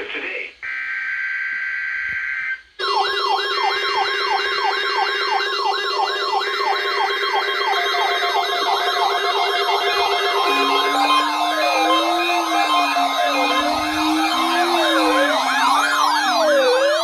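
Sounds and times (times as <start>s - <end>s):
electronic alert siren sweeps: 0.7s - 17.0s
wavering tones: 3.7s - 17.0s.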